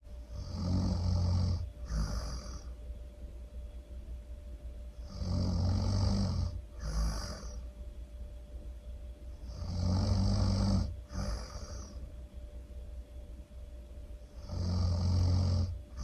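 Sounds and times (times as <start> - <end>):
person snoring loudly: 0.3 - 2.8, 5.0 - 7.6, 9.5 - 12.0, 14.3 - 16.0
airy hissing breath: 11.1 - 12.1.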